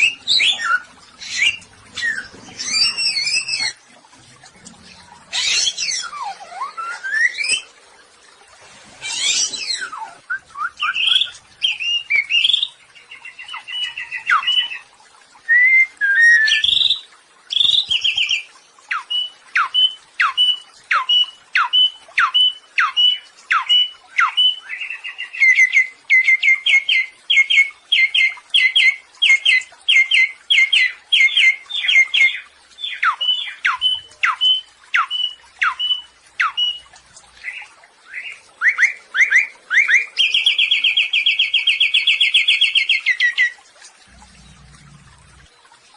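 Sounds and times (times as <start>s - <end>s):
songbird whistling downward notes: 15.5s - 16.6s.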